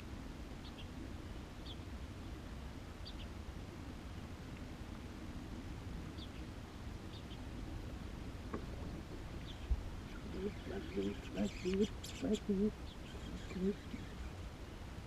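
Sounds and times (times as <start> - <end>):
steady low rumble: 0.0 - 15.0
faint bird chirps: 9.4 - 14.4.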